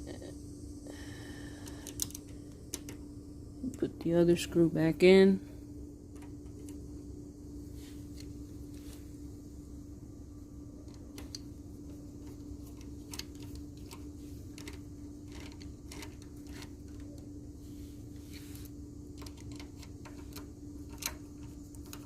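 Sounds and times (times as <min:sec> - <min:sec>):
steady low hum: 0:00.0 - 0:22.0
screw clicks and taps: 0:10.8 - 0:17.2, 0:19.2 - 0:22.0.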